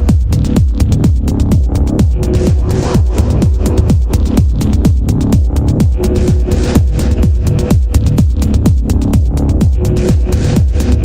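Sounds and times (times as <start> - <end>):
crisp hi-hats: 0.0 - 11.0
kick drum: 0.0 - 11.0
rising noise wash: 0.0 - 11.0.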